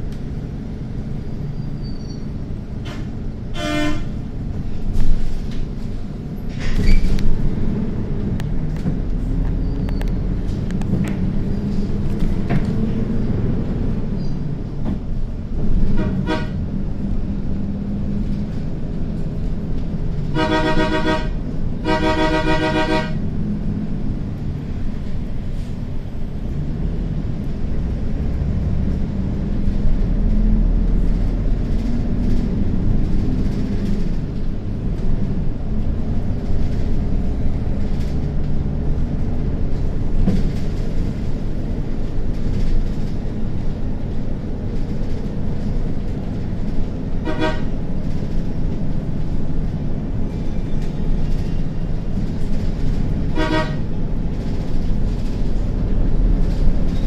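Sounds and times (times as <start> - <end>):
bus engine rumbling: 0.0 - 57.0
bus horn: 2.8 - 4.3, 15.8 - 16.7, 20.2 - 23.3, 47.2 - 47.8, 53.3 - 53.9.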